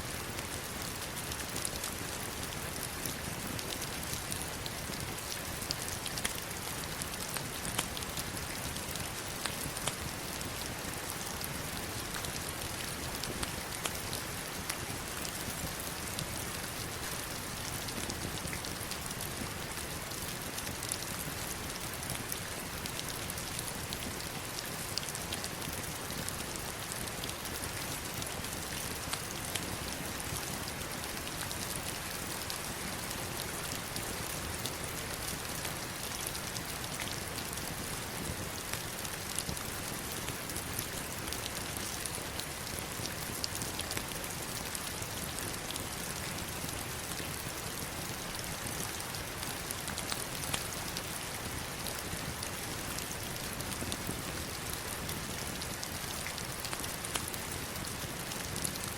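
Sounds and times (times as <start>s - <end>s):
heavy rain on rocks and water: 0.0s - 58.9s.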